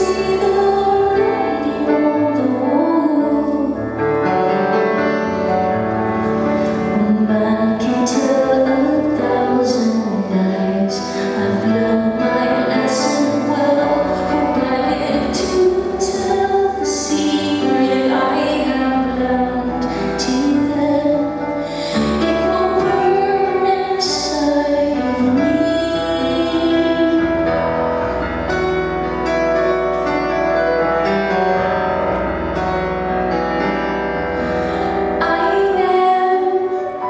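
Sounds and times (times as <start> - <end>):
woman singing: 0.0 - 3.9, 6.9 - 27.8, 34.9 - 37.0
piano chords: 0.0 - 37.0.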